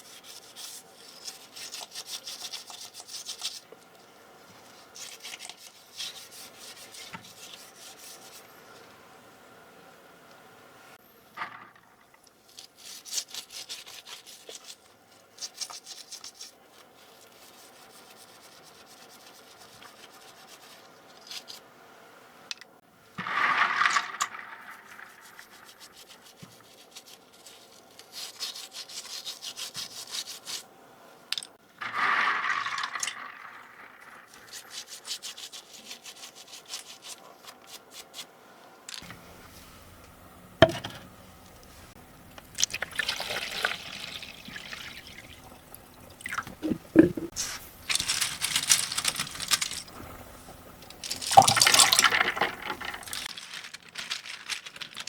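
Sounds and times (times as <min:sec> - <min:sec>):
brush scrubbing a keyboard: 0:00.0 - 0:03.7, 0:04.5 - 0:08.5, 0:12.7 - 0:21.6, 0:25.5 - 0:30.7, 0:34.4 - 0:38.3.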